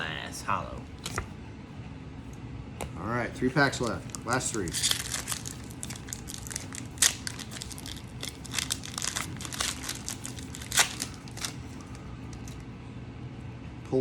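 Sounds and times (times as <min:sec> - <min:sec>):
foil wrapper crinkling: 0:03.6 - 0:12.7.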